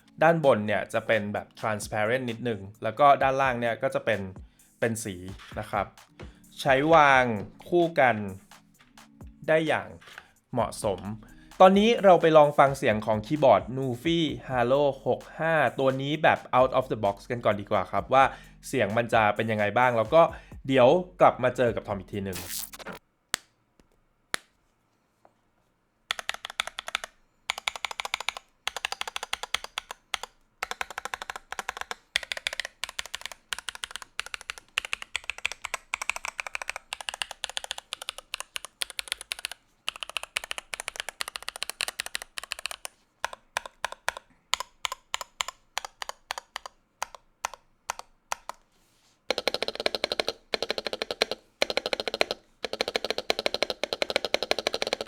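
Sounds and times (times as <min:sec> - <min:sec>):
mechanical keyboard typing: 0:26.1 - 0:48.6, 0:49.3 - 0:55.0.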